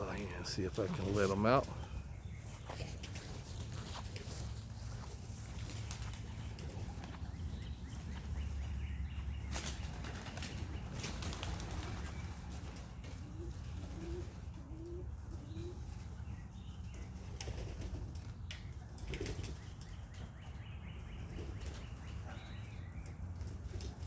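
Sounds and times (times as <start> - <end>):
pigeons cooing: 0.0 - 18.2
pigeons flapping wings: 5.4 - 7.1, 9.5 - 14.9, 17.2 - 18.4, 19.0 - 19.9.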